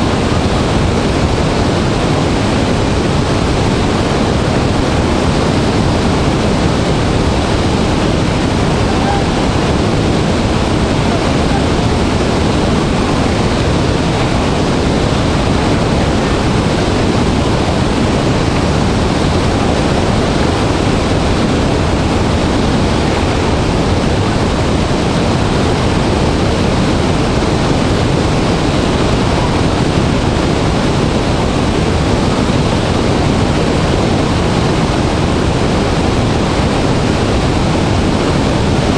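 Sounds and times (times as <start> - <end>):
waterfall rushing: 0.0 - 38.9.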